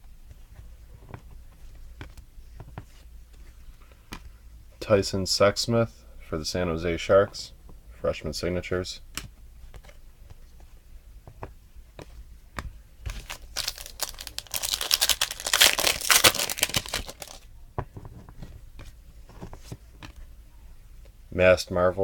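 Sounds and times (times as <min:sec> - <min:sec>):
wrapper crinkling and tearing: 0:13.1 - 0:17.4.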